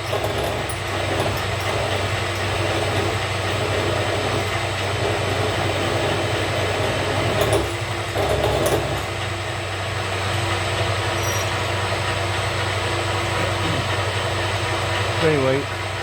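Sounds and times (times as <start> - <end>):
drill bit cutting metal: 0.0 - 9.1
metal lathe running: 0.0 - 16.0.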